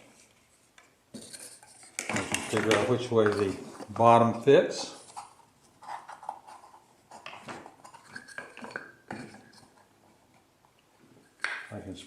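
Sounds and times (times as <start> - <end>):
wooden pieces knocking and clicking: 1.2 - 3.6, 5.2 - 9.8, 11.4 - 11.8.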